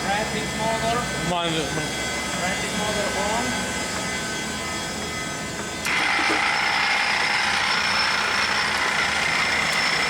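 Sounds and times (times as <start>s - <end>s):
lathe gearing running: 0.0s - 10.0s
loud mechanical gear noise: 5.8s - 10.0s.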